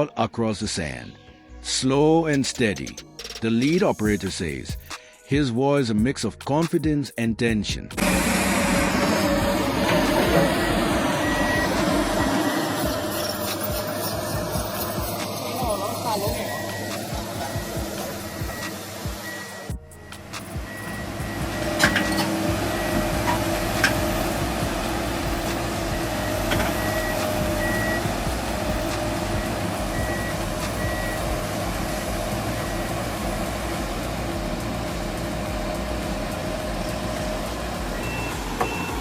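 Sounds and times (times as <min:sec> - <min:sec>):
heavy machine engine running: 0:08.0 - 0:39.0
reversing alarm beeping: 0:08.0 - 0:39.0.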